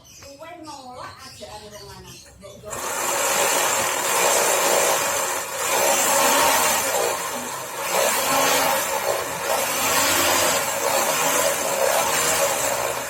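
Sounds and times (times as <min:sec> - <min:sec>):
drum sander whirring: 0:02.7 - 0:13.0.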